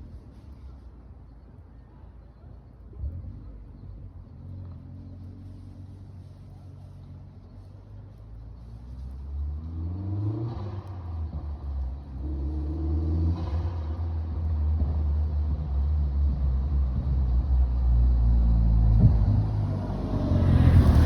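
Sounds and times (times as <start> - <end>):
deep exhaust rumble: 0.0 - 21.0
car engine revving: 9.6 - 21.0.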